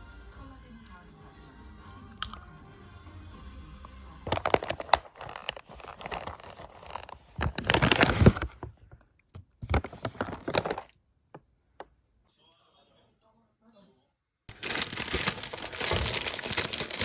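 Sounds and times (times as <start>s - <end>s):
crinkling and scraping handling: 4.3s - 10.9s, 14.5s - 17.0s.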